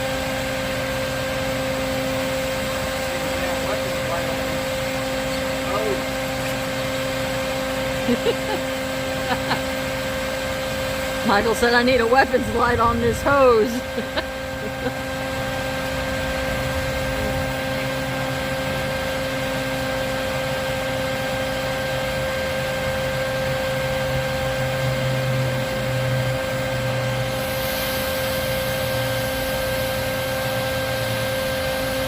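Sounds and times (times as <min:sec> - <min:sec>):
vacuum motor whining: 0:00.0 - 0:32.0
air rushing through hose: 0:26.7 - 0:32.0.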